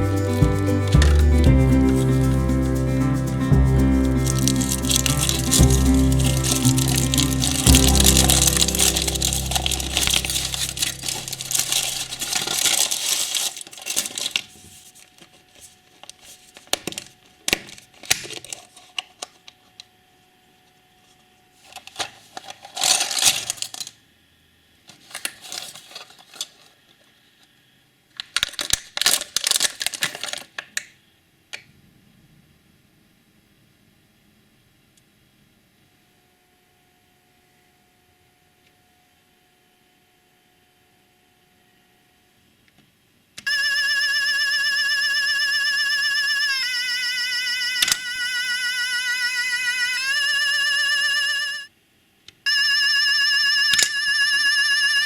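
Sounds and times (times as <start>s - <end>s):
foil wrapper crinkling and tearing: 4.2s - 19.3s, 21.6s - 23.9s, 24.9s - 26.8s, 28.2s - 30.8s.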